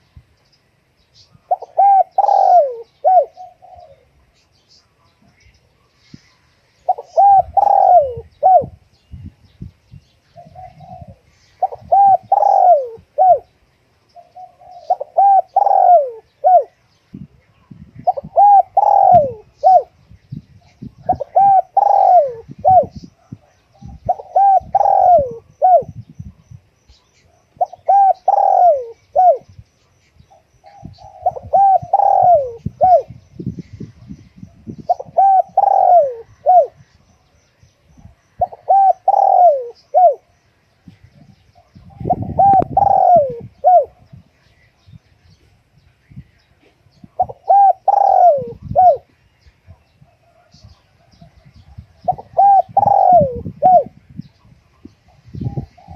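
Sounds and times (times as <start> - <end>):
dove cooing: 1.4 - 4.2, 6.9 - 8.8, 10.4 - 13.5, 14.2 - 16.8, 18.0 - 20.0, 20.8 - 26.0, 27.3 - 29.5, 30.3 - 33.2, 34.6 - 36.8, 38.4 - 40.3, 41.6 - 44.2, 46.6 - 49.2, 50.3 - 54.0, 54.8 - 55.9.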